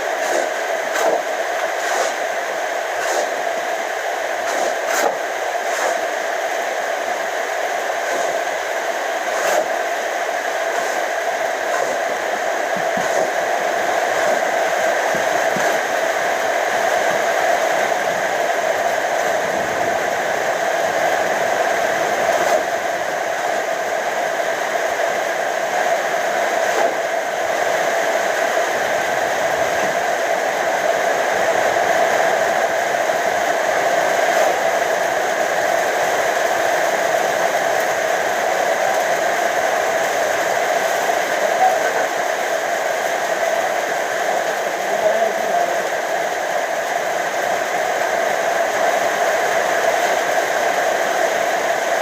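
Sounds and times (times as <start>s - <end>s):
steady whirring: 0.0s - 47.8s.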